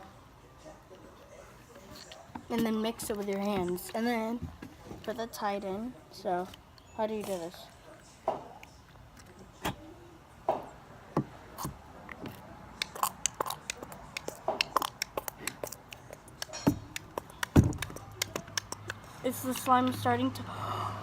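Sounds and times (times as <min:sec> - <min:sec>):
hands squishing slime: 0:12.8 - 0:19.7.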